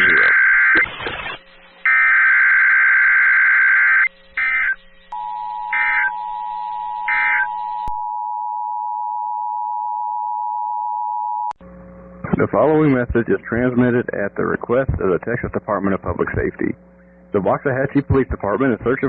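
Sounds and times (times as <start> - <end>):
steady two-tone attention signal: 4.4 - 11.5.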